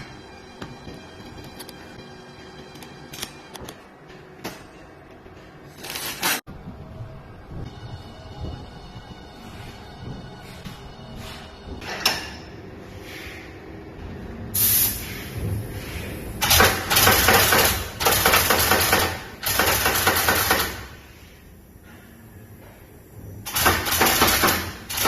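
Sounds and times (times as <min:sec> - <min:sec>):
air hiss: 0:14.6 - 0:16.4
pneumatic impact wrench hammering: 0:16.4 - 0:21.0, 0:23.5 - 0:25.0.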